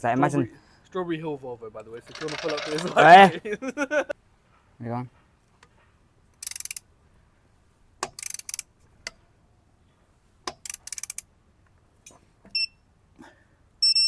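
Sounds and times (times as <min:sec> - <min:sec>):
ratchet wrench clicking: 0:02.1 - 0:03.0, 0:06.4 - 0:06.8, 0:08.0 - 0:08.7, 0:10.5 - 0:11.2.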